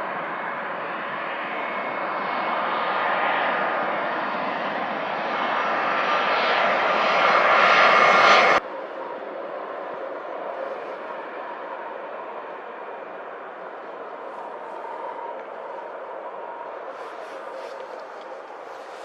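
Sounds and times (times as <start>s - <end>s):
faint engine whine: 0.0s - 19.0s
jet engines roaring: 0.0s - 19.0s.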